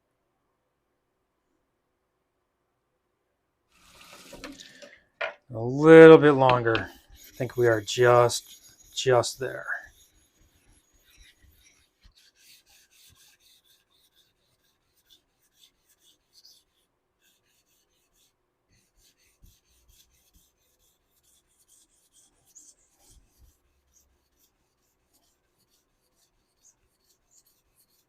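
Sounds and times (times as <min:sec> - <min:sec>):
razor scraping on sharpening stone: 0:06.3 - 0:18.3.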